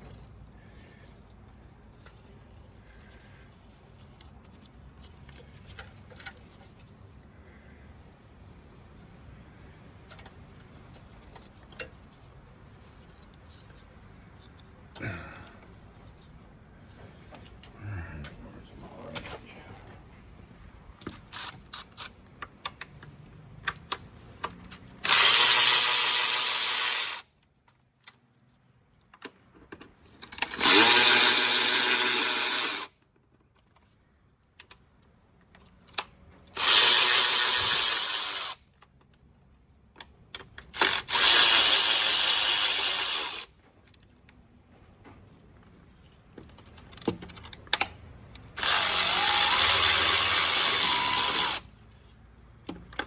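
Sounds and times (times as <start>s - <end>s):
tool handling clicks and knocks: 5.2s - 6.9s, 43.6s - 48.6s
power drill running: 25.0s - 27.3s, 30.4s - 32.9s, 36.6s - 38.6s, 40.7s - 43.5s, 48.6s - 51.6s.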